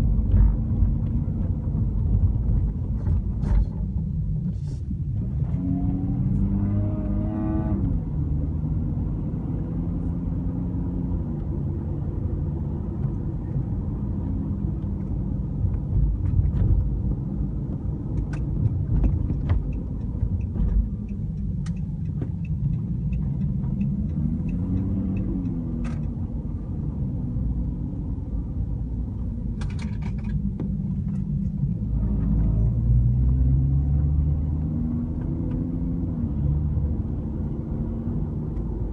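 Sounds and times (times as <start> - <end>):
car engine: 0.0 - 38.9
road rumble in car cabin: 0.0 - 38.9.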